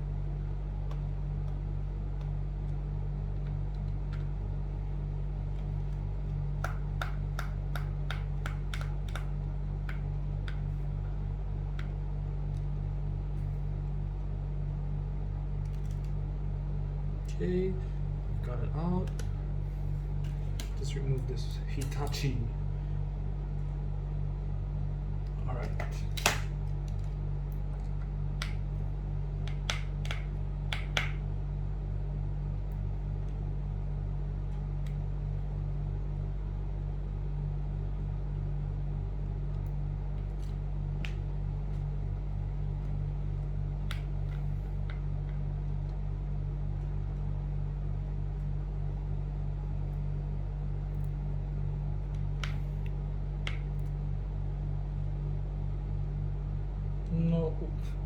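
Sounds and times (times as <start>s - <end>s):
low electrical hum: 0.0s - 58.0s.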